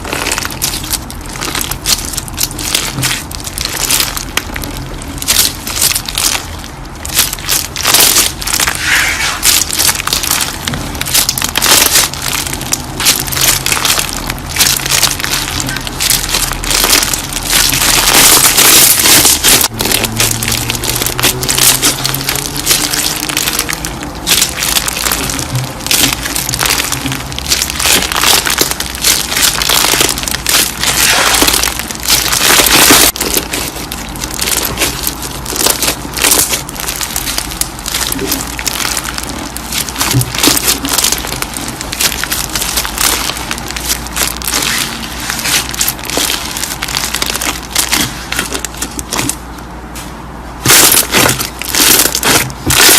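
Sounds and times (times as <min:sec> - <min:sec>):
slime crackling and popping: 0:00.0 - 0:52.9.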